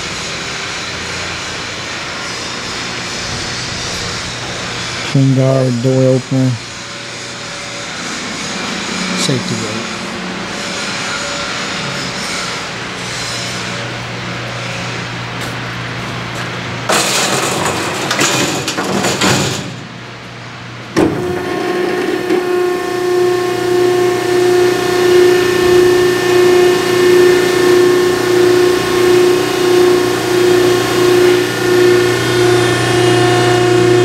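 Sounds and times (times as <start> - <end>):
pulsing pump whine: 0.0 - 17.0, 19.8 - 34.0
metal clatter: 16.9 - 19.8
hydraulic pump starting clunk: 21.0 - 34.0.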